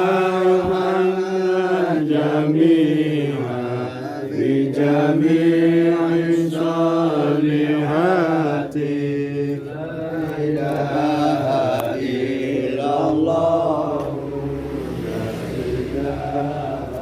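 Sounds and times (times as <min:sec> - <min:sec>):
devotional chanting: 0:00.0 - 0:17.0.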